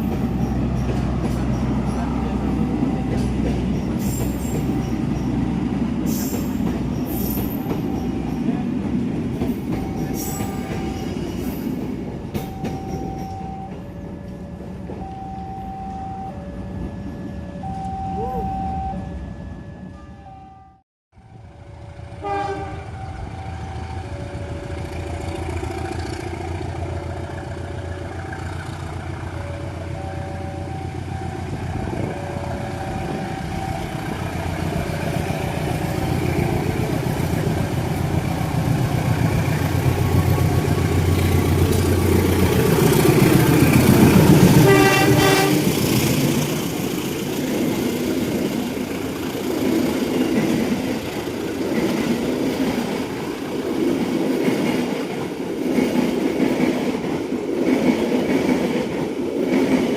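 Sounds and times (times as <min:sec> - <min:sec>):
diesel train engine drone: 0:00.0 - 0:59.9
two-note level-crossing alarm: 0:12.4 - 0:22.0, 0:29.3 - 0:36.2
train horn blast: 0:22.2 - 0:23.2, 0:44.3 - 0:46.0.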